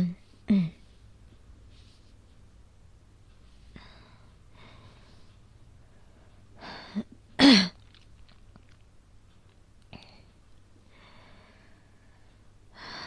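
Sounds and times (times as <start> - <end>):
woman breathing: 3.4 - 7.1, 10.9 - 13.0
woman coughing: 7.4 - 7.8.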